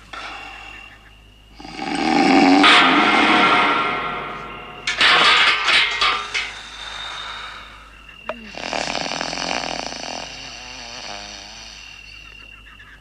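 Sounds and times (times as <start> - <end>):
whistling breath: 0.0 - 1.1, 6.5 - 8.2
man snoring: 1.6 - 2.7, 8.4 - 12.0.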